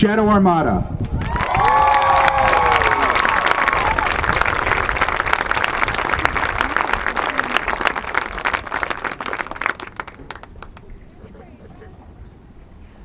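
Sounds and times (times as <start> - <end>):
crowd applauding: 1.1 - 10.9.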